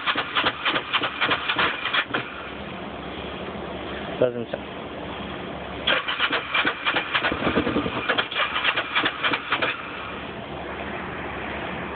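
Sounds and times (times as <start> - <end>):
motorcycle starter clicking: 0.0 - 2.3, 5.9 - 9.8.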